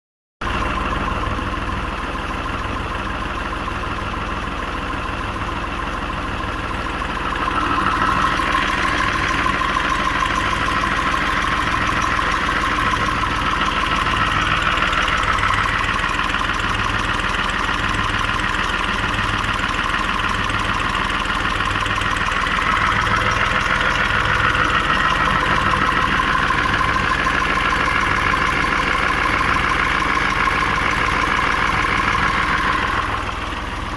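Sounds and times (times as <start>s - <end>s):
tractor diesel engine running: 0.4s - 33.9s.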